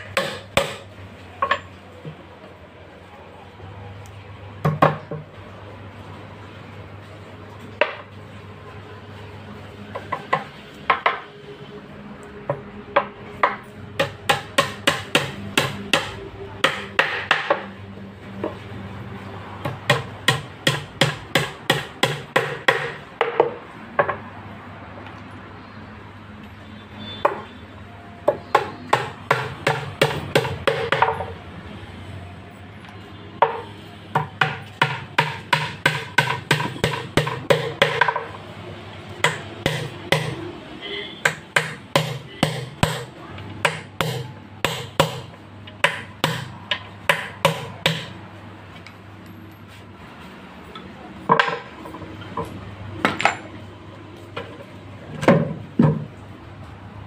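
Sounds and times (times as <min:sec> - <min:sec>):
hammer striking wood: 0:00.0 - 0:01.6, 0:10.0 - 0:11.3, 0:12.5 - 0:17.7, 0:19.6 - 0:24.2, 0:28.2 - 0:31.3, 0:33.4 - 0:38.4, 0:39.2 - 0:40.4, 0:41.2 - 0:48.2.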